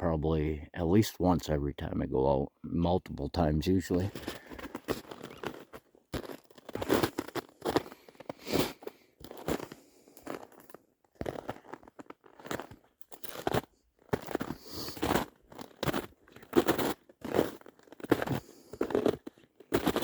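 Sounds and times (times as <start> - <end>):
footsteps crunching on ground: 4.0 - 20.0.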